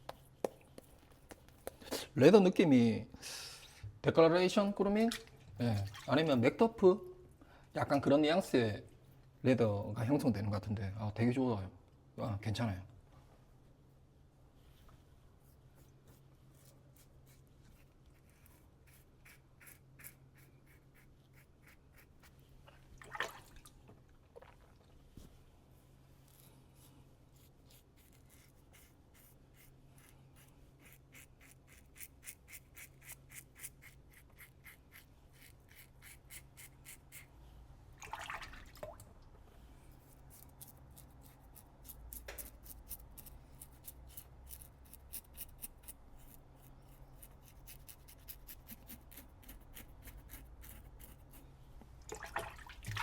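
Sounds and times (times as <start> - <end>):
razor scraping stubble: 16.6 - 22.3, 40.1 - 51.4.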